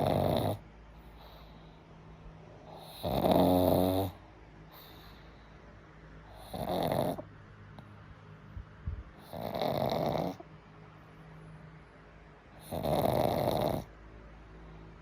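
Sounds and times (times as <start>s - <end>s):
dog snoring: 0.0s - 1.6s, 2.6s - 5.2s, 6.2s - 7.3s, 9.2s - 10.5s, 12.5s - 14.0s.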